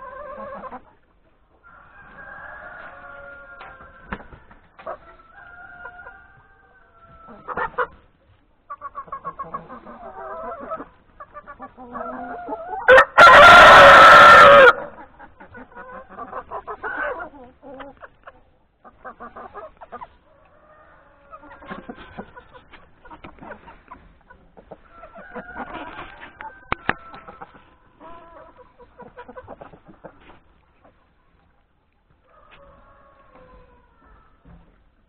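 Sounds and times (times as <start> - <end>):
hens clucking: 0.0 - 35.0
rooster crowing: 1.6 - 4.2, 12.1 - 14.9, 24.9 - 27.5, 32.3 - 34.4.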